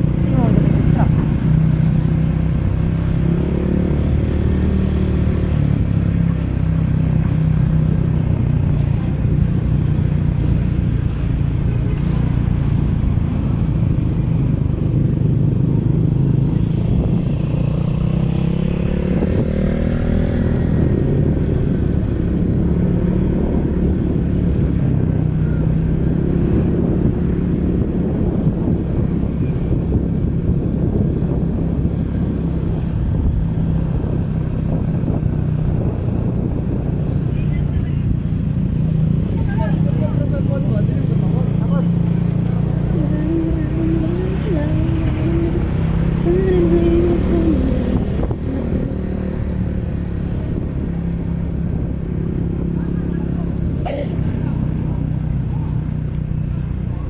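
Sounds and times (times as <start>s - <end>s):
motorcycle engine running: 0.0s - 57.0s
wind and road noise: 0.0s - 57.0s.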